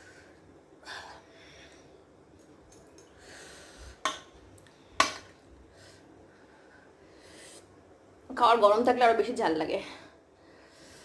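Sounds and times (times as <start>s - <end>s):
woman breathing: 3.1s - 4.1s, 9.8s - 11.0s.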